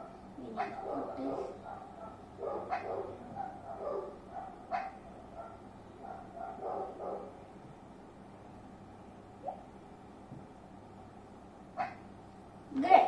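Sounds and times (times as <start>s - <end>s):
dog barking: 0.0s - 7.4s, 11.8s - 12.0s.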